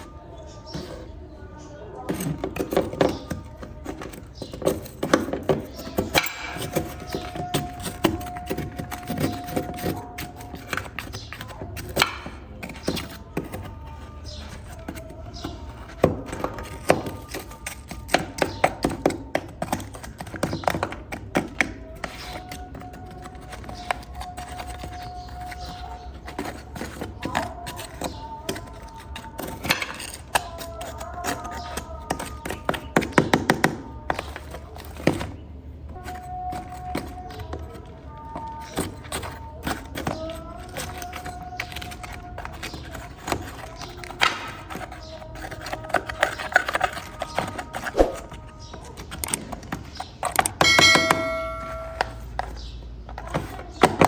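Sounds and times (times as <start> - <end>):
plastic toy car clicking: 2.1 - 50.7.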